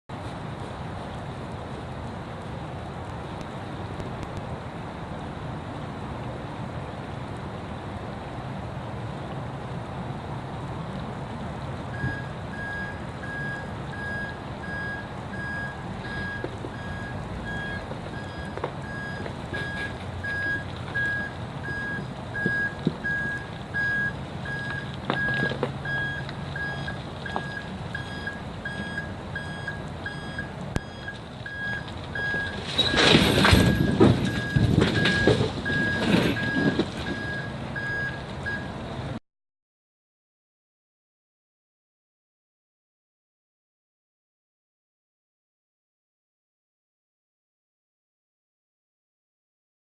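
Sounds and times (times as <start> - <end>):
reversing alarm beeping: 11.9 - 38.7.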